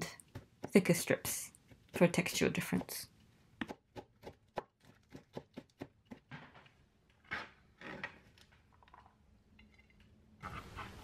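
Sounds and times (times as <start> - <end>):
knife chopping cabbage on board: 3.6 - 6.3.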